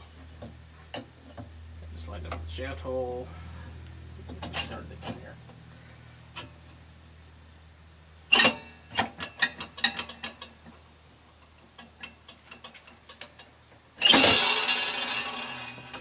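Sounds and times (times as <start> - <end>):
loud clattering rattle: 14.0 - 16.0.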